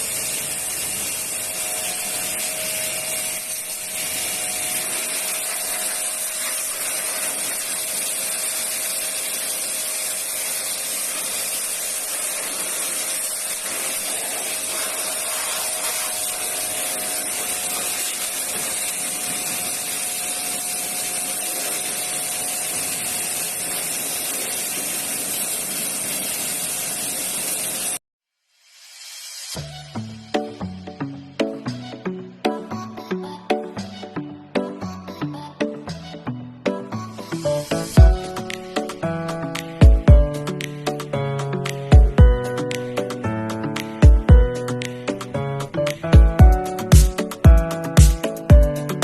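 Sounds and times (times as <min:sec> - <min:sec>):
pressure washer jet hissing: 0:00.0 - 0:28.0
pressure washer motor hum: 0:00.0 - 0:28.0.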